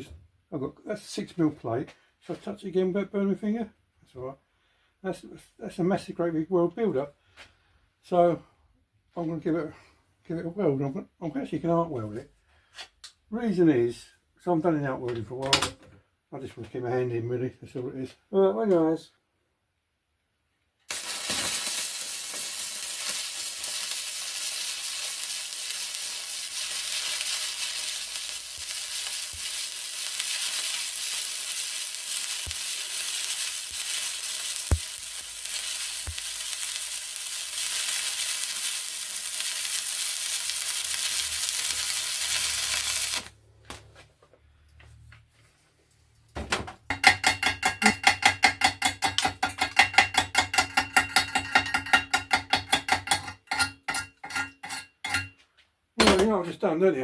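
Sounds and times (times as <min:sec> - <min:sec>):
welding arc crackling: 0:20.9 - 0:43.4.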